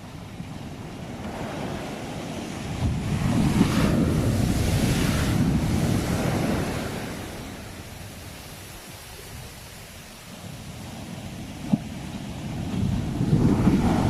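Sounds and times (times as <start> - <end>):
ocean surf: 0.0 - 14.0
wave breaking: 1.2 - 7.9.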